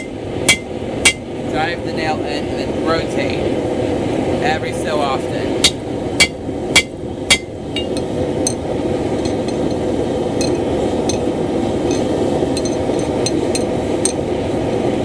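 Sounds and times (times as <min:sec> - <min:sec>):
hammer ringing on metal: 0:00.0 - 0:01.2, 0:05.6 - 0:08.6
forge running: 0:03.5 - 0:15.0.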